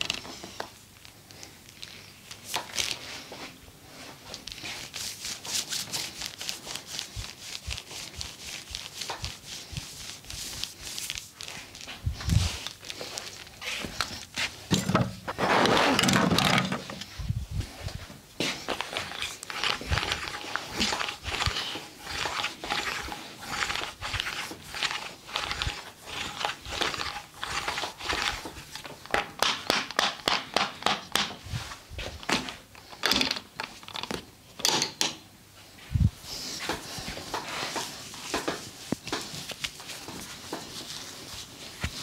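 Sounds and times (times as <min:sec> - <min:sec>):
hands rubbing and slapping skin: 0:04.3 - 0:14.6, 0:36.6 - 0:42.0.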